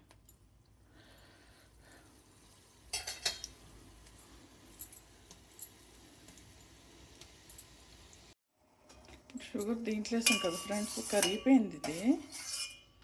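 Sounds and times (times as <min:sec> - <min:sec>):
metal spoon clinking on pot: 0:02.9 - 0:03.5, 0:09.6 - 0:13.0.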